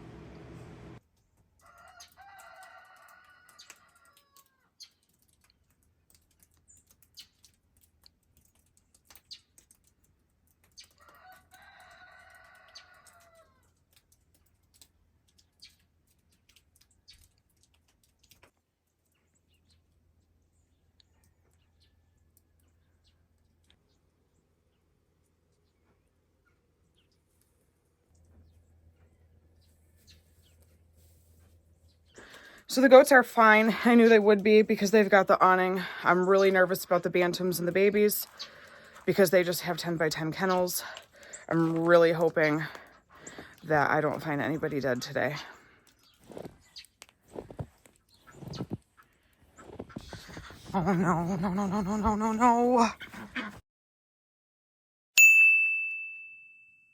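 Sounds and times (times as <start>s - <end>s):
faint clicks: 1.6s - 19.4s
rooster crowing: 1.7s - 4.5s.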